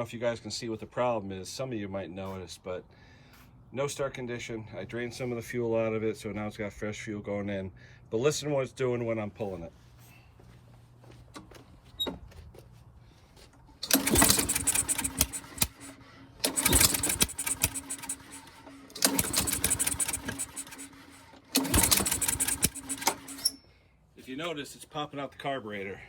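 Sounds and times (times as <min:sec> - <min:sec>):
man talking: 0:00.0 - 0:02.9, 0:03.8 - 0:09.8, 0:24.2 - 0:26.0
mower engine cranking: 0:13.6 - 0:23.6
carburetor popping: 0:13.8 - 0:23.6.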